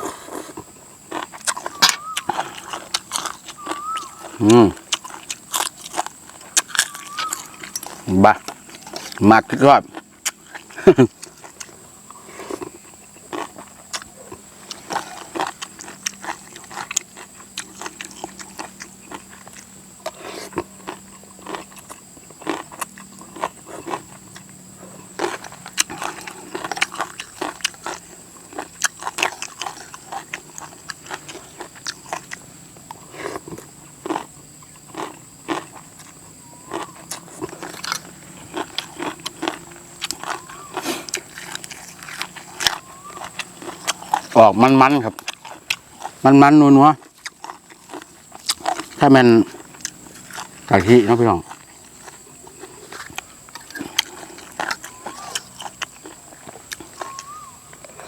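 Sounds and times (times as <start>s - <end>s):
person chewing and slurping: 0.0s - 9.2s, 9.9s - 44.4s, 45.2s - 46.2s, 47.0s - 50.7s, 51.5s - 58.0s.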